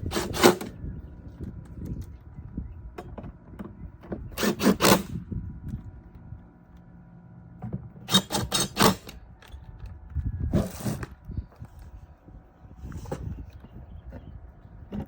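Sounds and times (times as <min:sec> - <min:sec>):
short metal scrape: 0:10.5 - 0:11.1.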